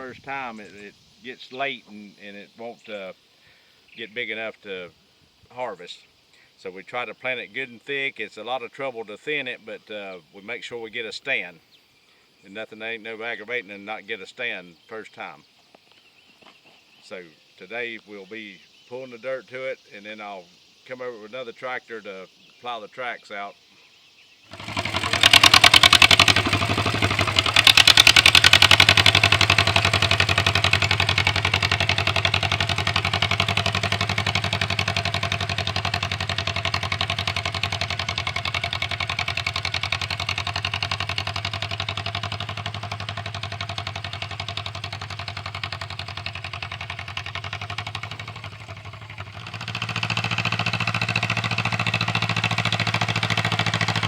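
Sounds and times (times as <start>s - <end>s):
tractor engine running: 24.5s - 54.0s.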